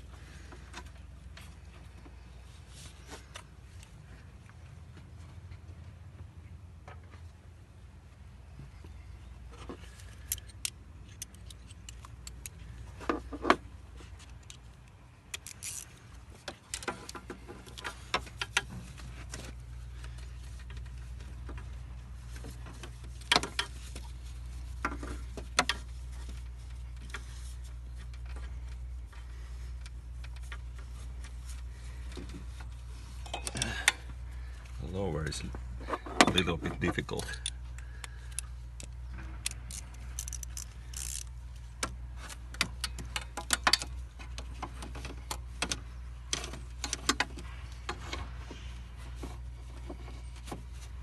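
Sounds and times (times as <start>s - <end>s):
low steady hum: 0.0s - 51.0s
hand tools clicking and clinking: 33.2s - 34.0s.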